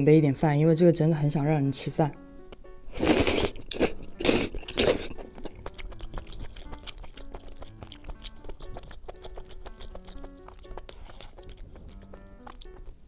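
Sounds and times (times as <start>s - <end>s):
soft background music: 0.0s - 13.0s
close-up chewing: 2.9s - 13.0s.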